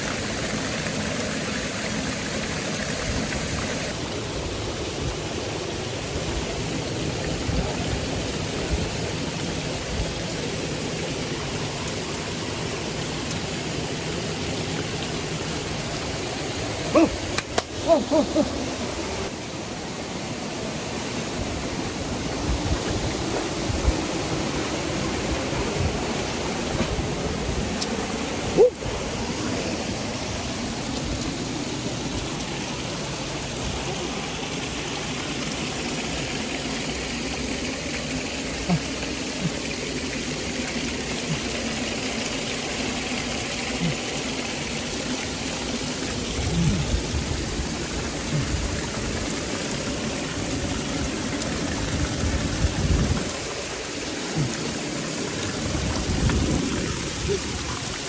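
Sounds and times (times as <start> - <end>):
waterfall rushing: 0.0 - 58.0.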